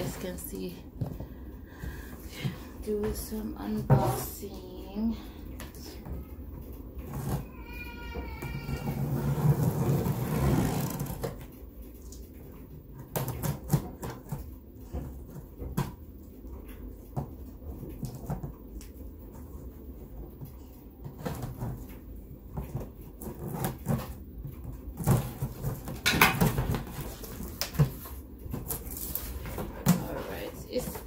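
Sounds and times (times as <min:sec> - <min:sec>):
cardboard and packing rustling: 0:07.0 - 0:11.5, 0:12.9 - 0:31.0
cardboard scraping rasp: 0:08.8 - 0:11.3.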